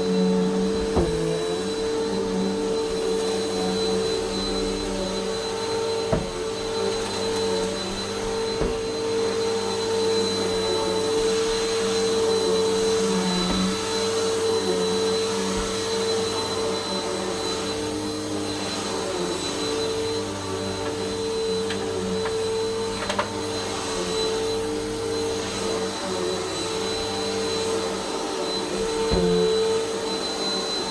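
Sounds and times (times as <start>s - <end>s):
vacuum cleaner running: 0.0s - 30.9s
vacuum head knocking: 6.0s - 6.4s, 8.3s - 9.0s.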